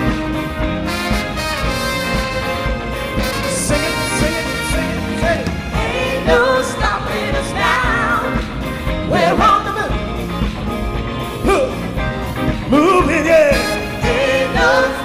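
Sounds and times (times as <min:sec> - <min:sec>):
soul music with band: 0:00.0 - 0:15.0
lead singer singing: 0:03.2 - 0:10.2, 0:12.7 - 0:15.0.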